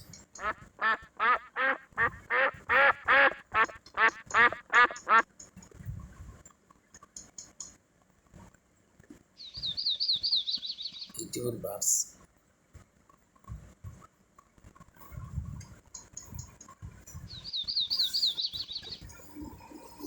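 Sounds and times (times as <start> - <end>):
duck quacking rapidly: 0.4 - 5.2.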